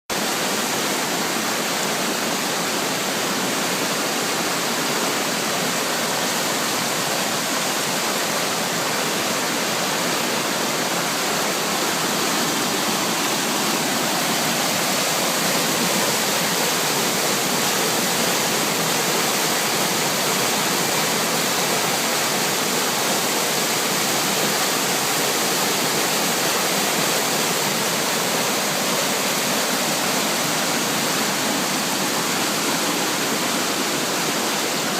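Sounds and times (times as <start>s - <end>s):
floodwater rushing: 0.1s - 34.9s.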